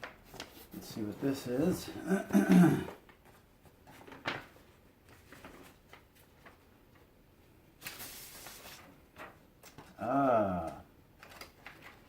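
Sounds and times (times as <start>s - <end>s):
paper rustling: 0.0s - 1.9s, 2.9s - 7.1s, 7.8s - 10.0s, 11.2s - 12.0s.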